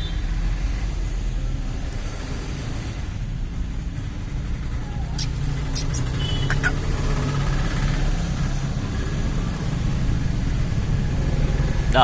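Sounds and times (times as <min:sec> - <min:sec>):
road traffic: 0:00.0 - 0:12.0
vehicle engine rumble: 0:00.0 - 0:12.0
high chirps: 0:05.0 - 0:06.8.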